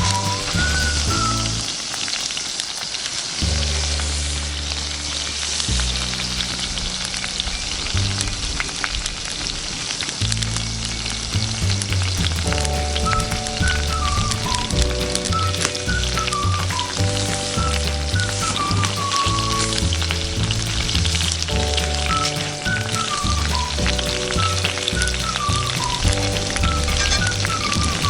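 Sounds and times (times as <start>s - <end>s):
background music with slow bass: 0.0s - 1.7s, 3.4s - 28.0s.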